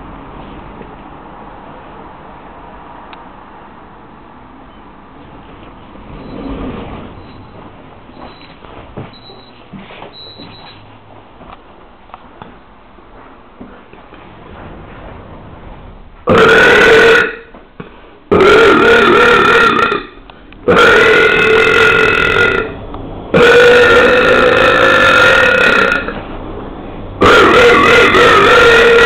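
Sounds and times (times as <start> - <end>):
person belching loudly: 16.3 - 17.5, 18.3 - 26.2, 27.2 - 29.0.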